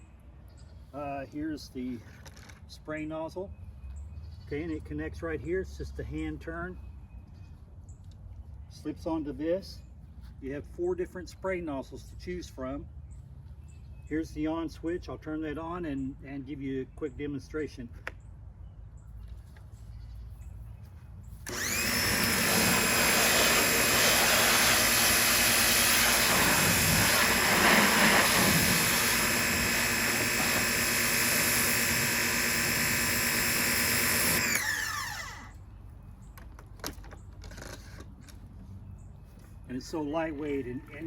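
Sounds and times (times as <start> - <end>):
pressure washer whining: 21.4 - 35.6
high-pressure spray hiss: 22.6 - 29.2.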